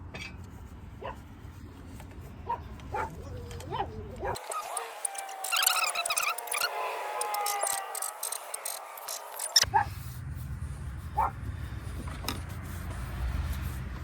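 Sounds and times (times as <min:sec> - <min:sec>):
dog whining and yipping: 0:02.5 - 0:08.1.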